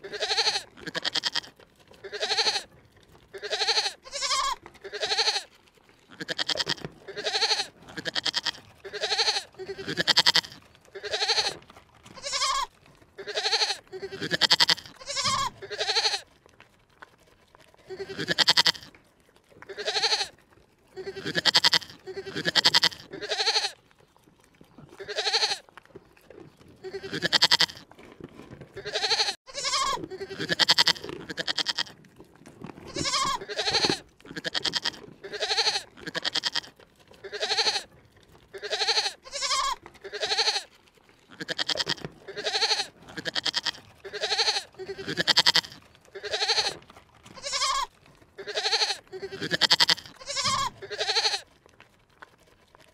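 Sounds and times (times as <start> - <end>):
animal calling: 0.0 - 2.7, 3.3 - 5.5, 6.1 - 16.2, 21.0 - 23.8, 24.6 - 25.6, 26.2 - 27.8, 28.8 - 31.9, 32.9 - 37.9, 38.5 - 40.7, 41.3 - 51.4.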